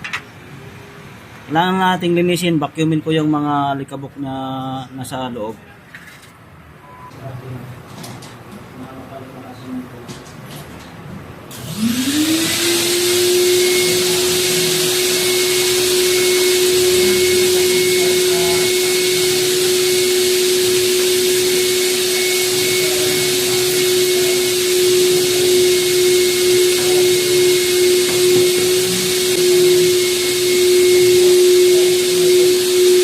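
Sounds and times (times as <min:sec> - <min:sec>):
vacuum cleaner running: 0:11.5 - 0:33.0.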